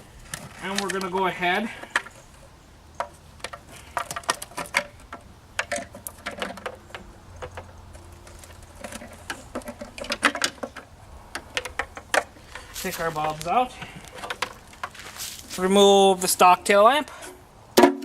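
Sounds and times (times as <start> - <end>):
plastic parts clicking and knocking: 3.0 - 12.7, 13.3 - 15.0.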